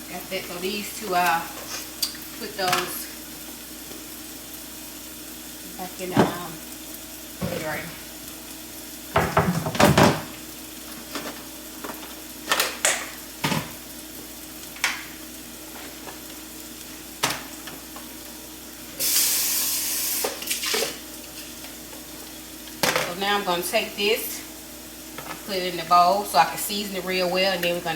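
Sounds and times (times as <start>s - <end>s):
peppers sizzling in a skillet: 0.0s - 27.9s
kitchen items clattering: 7.4s - 8.0s, 9.2s - 13.8s, 20.4s - 21.6s, 22.8s - 23.4s
rushing hiss: 19.0s - 20.4s.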